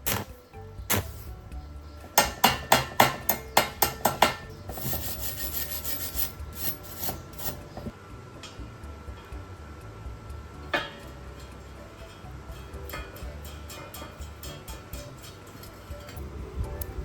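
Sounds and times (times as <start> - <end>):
file scraping metal: 0.0 - 1.4, 2.2 - 7.9, 12.8 - 16.3.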